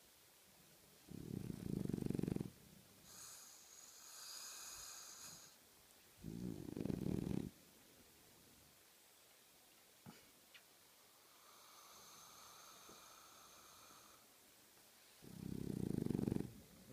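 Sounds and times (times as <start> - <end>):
dog snoring: 1.1 - 5.6, 6.2 - 7.6, 11.2 - 14.2, 15.2 - 16.6.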